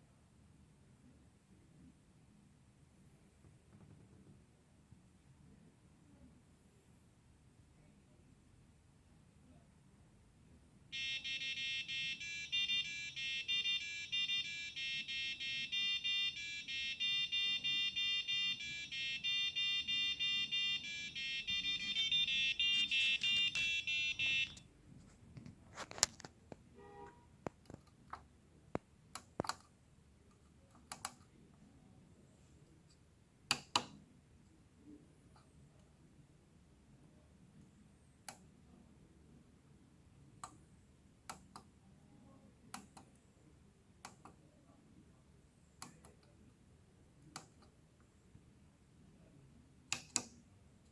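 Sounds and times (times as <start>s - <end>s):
alarm clock beeping melody: 10.9s - 24.6s
sharp clicks: 49.9s - 50.4s.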